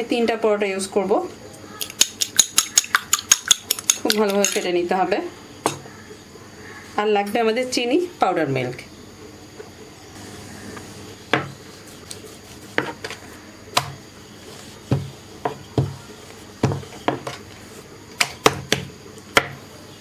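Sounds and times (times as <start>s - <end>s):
rolling pin knocking on board: 14.9s - 16.0s, 16.6s - 17.4s, 18.2s - 19.6s.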